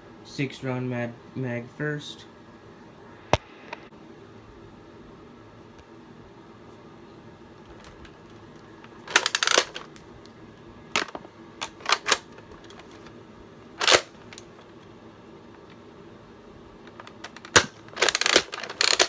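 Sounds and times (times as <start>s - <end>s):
plastic clicks and rattles: 7.7s - 8.2s, 8.8s - 10.0s, 10.9s - 13.1s, 13.8s - 14.6s, 16.8s - 19.0s.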